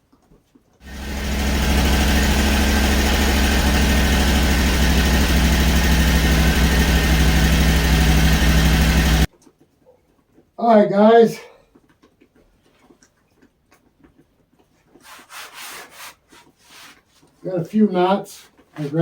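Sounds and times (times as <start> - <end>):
gas engine humming: 0.8 - 9.3.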